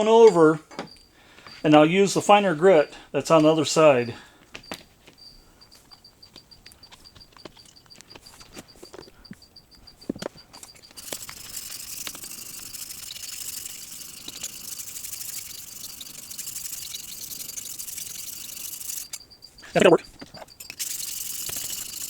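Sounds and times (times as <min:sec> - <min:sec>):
plane blade scraping on stone: 0:10.9 - 0:19.2.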